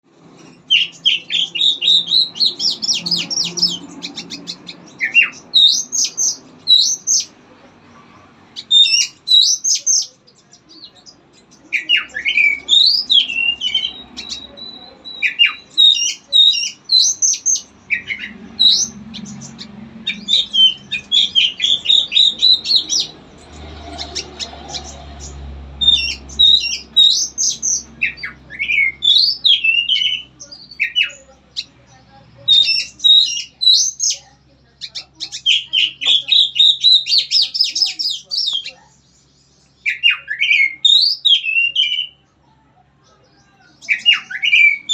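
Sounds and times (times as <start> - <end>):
songbird singing: 0.0 - 44.9.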